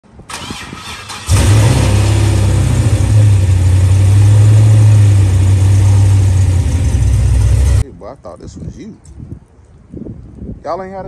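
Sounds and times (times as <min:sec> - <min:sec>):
car engine running: 0:01.3 - 0:07.8.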